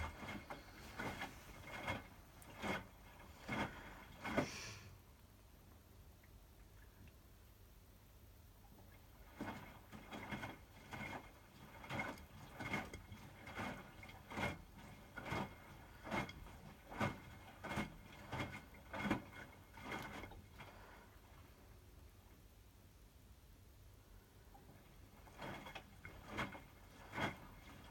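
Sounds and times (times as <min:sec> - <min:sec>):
washing machine drum turning: 0:00.0 - 0:04.4
wet laundry sloshing: 0:00.0 - 0:04.7, 0:08.7 - 0:21.7, 0:24.5 - 0:27.9.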